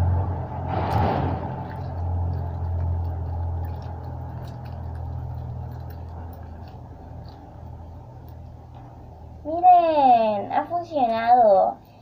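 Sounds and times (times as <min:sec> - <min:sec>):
slime squelching: 0:00.0 - 0:09.5
steady low hum: 0:00.0 - 0:12.0
faint sticky clicks: 0:01.7 - 0:08.9.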